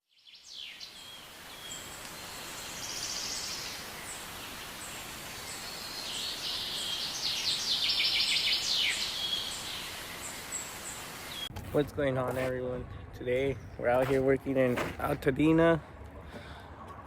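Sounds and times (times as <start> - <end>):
birds singing: 0.0 - 11.5
outdoor background noise: 0.0 - 17.0.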